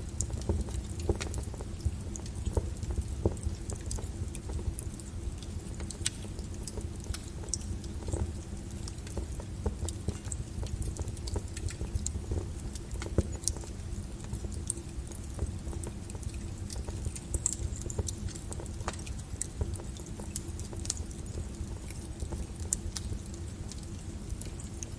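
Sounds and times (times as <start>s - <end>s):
low rumble of flames: 0.0s - 24.9s
wood fire crackling: 0.0s - 24.9s.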